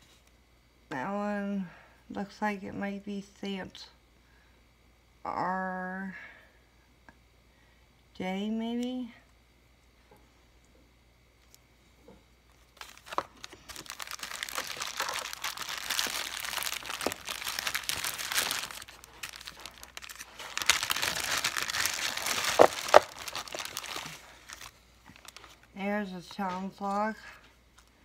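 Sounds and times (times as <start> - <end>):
packing material crinkling: 12.5 - 25.8.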